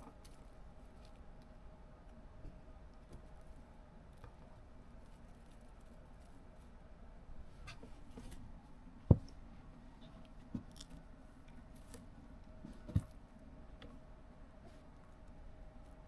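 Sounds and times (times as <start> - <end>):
dull thumps: 9.0 - 9.4.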